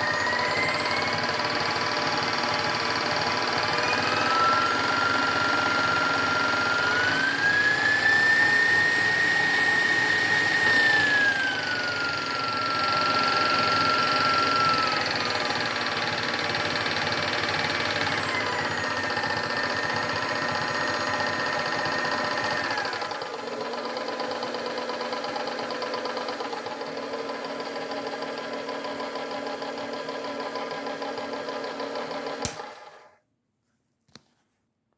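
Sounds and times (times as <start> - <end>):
electric motor whining: 0.0 - 23.2
switch click: 32.4 - 32.7.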